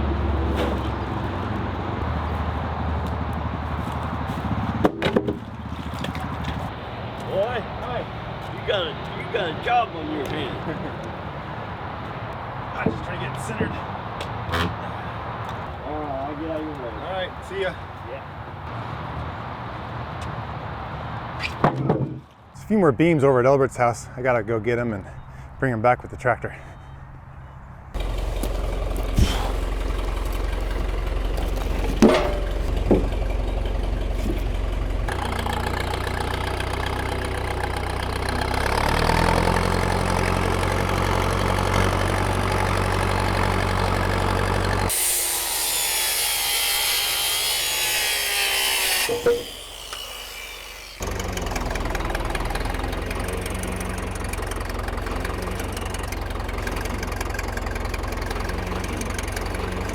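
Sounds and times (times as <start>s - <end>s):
tractor engine running: 0.0s - 7.4s, 28.0s - 45.0s, 49.2s - 59.9s
sharp knocks: 31.6s - 33.3s.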